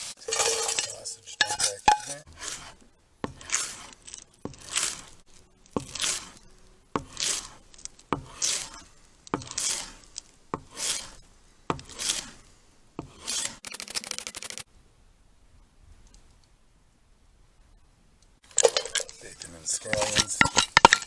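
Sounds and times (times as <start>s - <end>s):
fast clicking: 13.6s - 14.6s.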